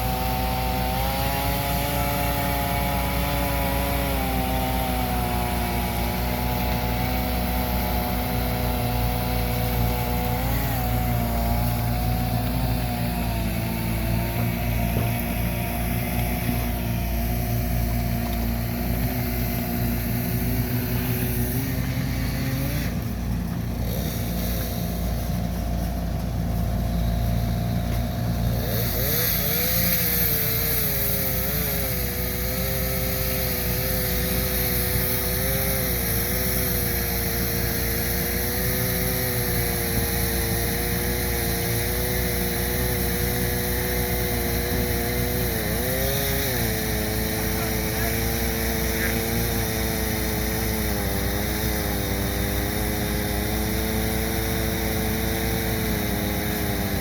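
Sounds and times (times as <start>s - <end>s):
earth-moving machine engine running: 4.5s - 57.0s.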